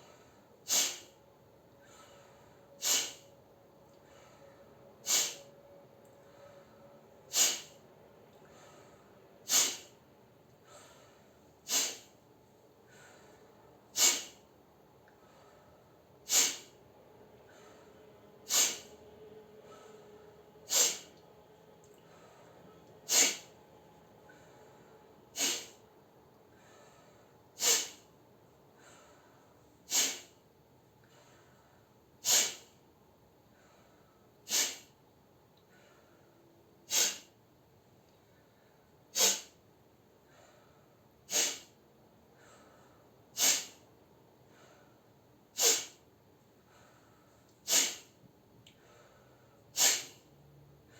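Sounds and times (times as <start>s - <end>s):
forceful nasal exhalations: 0.7s - 1.1s, 2.8s - 3.2s, 5.0s - 5.4s, 7.3s - 7.8s, 9.5s - 9.9s, 11.7s - 12.1s, 14.0s - 14.4s, 16.3s - 16.7s, 18.5s - 18.9s, 20.7s - 21.1s, 23.1s - 23.5s, 25.4s - 25.8s, 27.6s - 28.0s, 29.9s - 30.4s, 32.2s - 32.7s, 34.5s - 34.9s, 36.9s - 37.3s, 39.2s - 39.6s, 41.3s - 41.7s, 43.4s - 43.8s, 45.6s - 46.0s, 47.6s - 48.2s, 49.8s - 50.2s.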